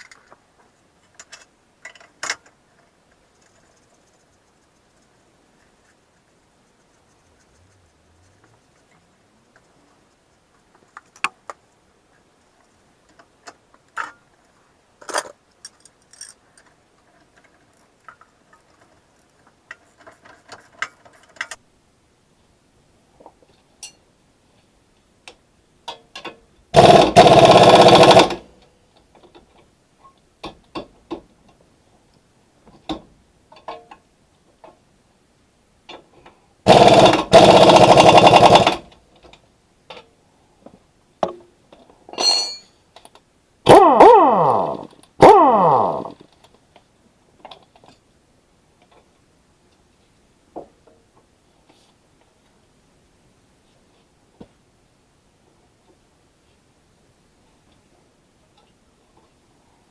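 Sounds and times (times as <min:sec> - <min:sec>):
tools clinking on metal: 0:42.1 - 0:42.8.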